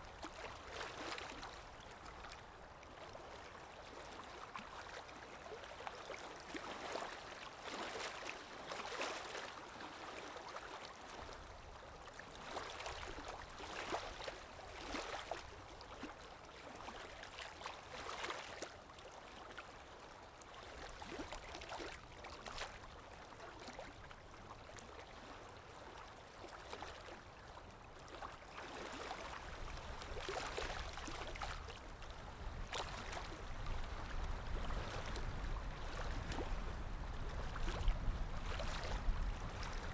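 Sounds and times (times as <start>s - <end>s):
water splashing and gurgling: 28.0s - 39.9s.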